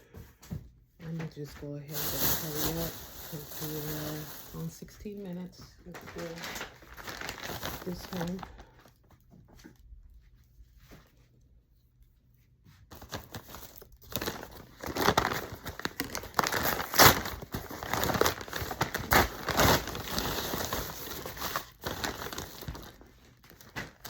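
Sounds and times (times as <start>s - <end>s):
package packaging tearing and crinkling: 5.9s - 8.7s, 12.9s - 24.0s.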